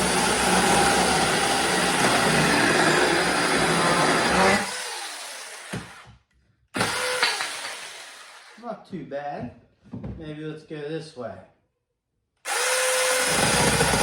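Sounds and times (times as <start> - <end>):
chainsaw cutting through wood: 0.0 - 6.1, 6.8 - 8.6, 12.5 - 14.0.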